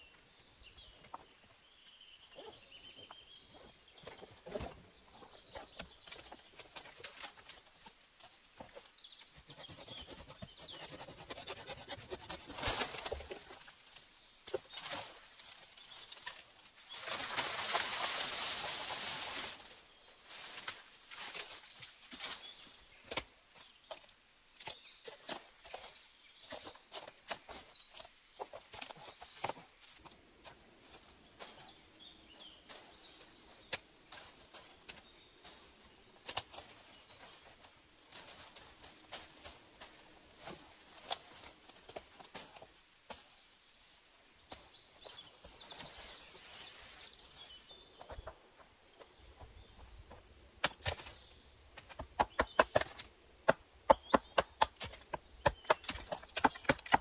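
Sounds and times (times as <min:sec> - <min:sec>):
hatchet strikes on wood: 0:51.8 - 0:57.0.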